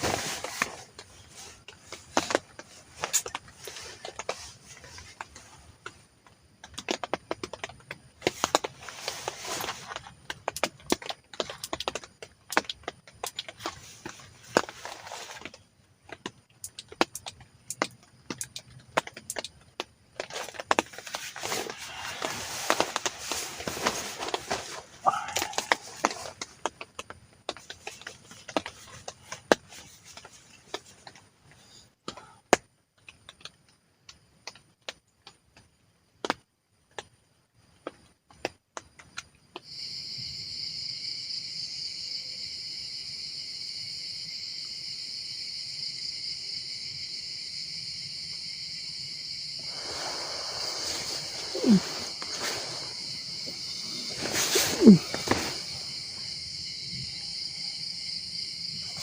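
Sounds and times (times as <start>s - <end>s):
small clicks and knocks: 0.5s - 21.3s
high-pitched insect chorus: 16.6s - 26.8s, 39.5s - 59.0s.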